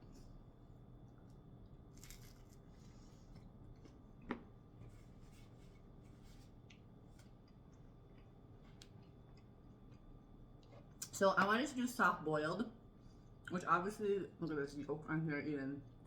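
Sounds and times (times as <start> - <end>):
faint handling sounds: 2.0 - 7.9.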